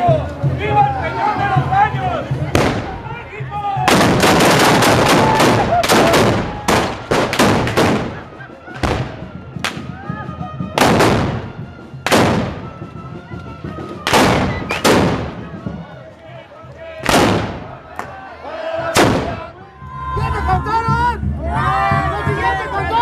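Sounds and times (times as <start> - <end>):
echoing gunshots: 2.6 - 3.1, 3.9 - 9.8, 10.8 - 11.5, 12.1 - 12.7, 14.1 - 15.5, 17.0 - 17.8, 18.9 - 19.5.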